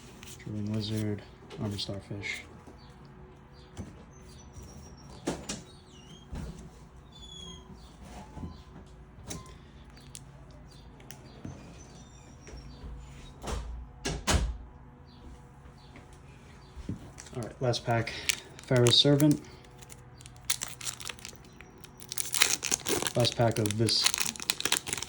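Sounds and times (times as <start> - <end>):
foil wrappers crinkling: 17.1 - 25.0.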